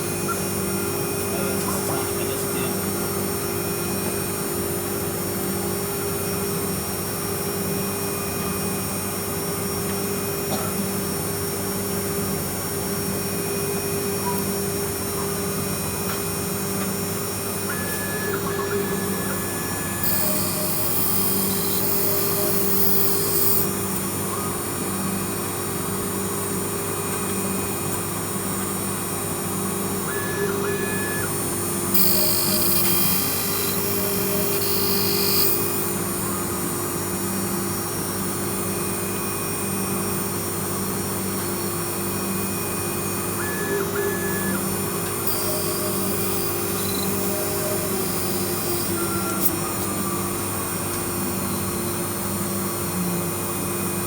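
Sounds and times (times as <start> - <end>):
milling machine motor hum: 11.0 - 54.0
short high tones: 17.7 - 20.5.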